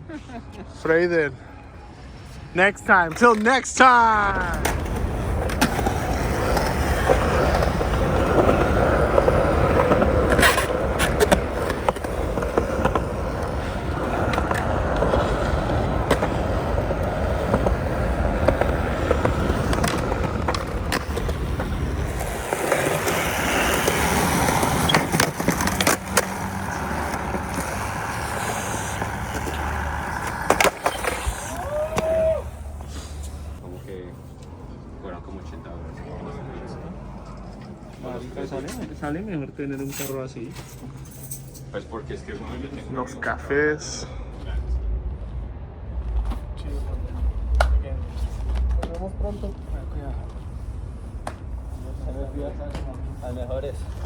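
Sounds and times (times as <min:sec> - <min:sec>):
skateboard wheels rolling on pavement: 0:02.9 - 0:33.7, 0:42.7 - 0:54.0
skateboard clacks: 0:04.5 - 0:33.5.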